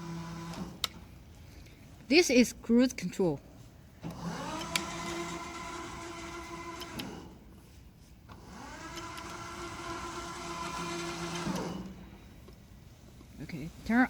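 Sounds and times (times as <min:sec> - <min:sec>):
robot drive motors whining: 0:00.0 - 0:01.0, 0:04.0 - 0:07.6, 0:08.3 - 0:12.4.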